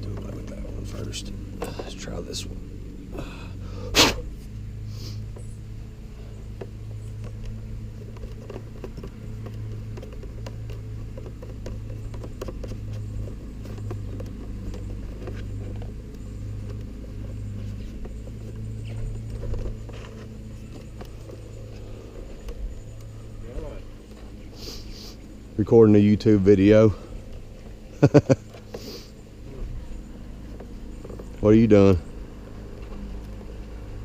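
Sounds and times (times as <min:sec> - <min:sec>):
steady low hum: 0:00.0 - 0:34.0
clicks and scratching of small parts: 0:06.6 - 0:23.2.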